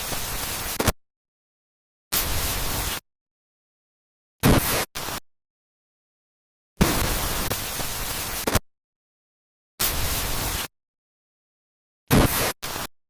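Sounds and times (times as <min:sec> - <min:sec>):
hissing static noise: 0:06.8 - 0:08.6.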